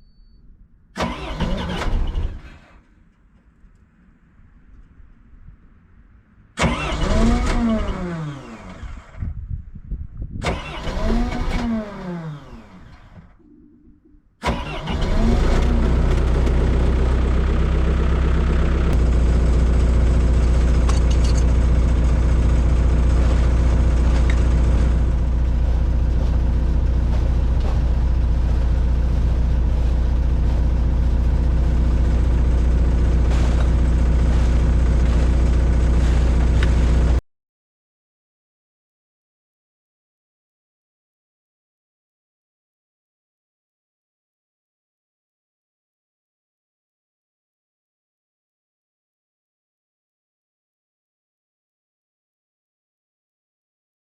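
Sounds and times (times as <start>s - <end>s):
starter motor cranking: 1.0s - 2.6s, 6.6s - 8.0s, 10.4s - 12.1s, 14.4s - 17.2s
diesel engine idling: 14.4s - 37.2s.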